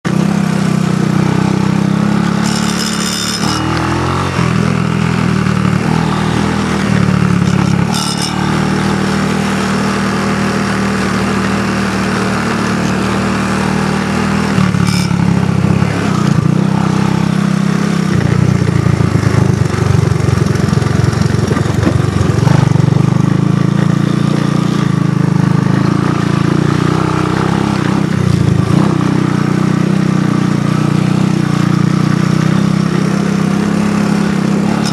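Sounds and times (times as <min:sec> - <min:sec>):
atv engine running: 0:00.0 - 0:34.9.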